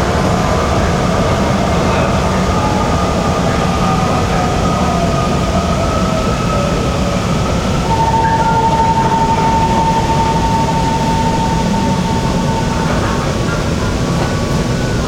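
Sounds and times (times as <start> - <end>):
train wheels rumbling on rail: 0.0 - 15.0
thin whine shifting in pitch: 7.8 - 15.0.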